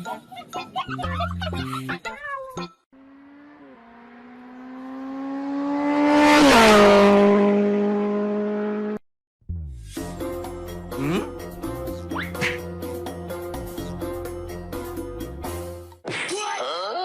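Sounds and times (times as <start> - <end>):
car passing by: 3.0 - 9.0.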